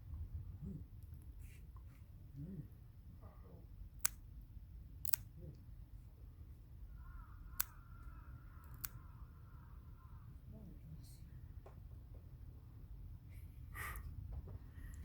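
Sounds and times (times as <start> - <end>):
nail clippers snipping: 5.0 - 5.3, 8.6 - 9.0.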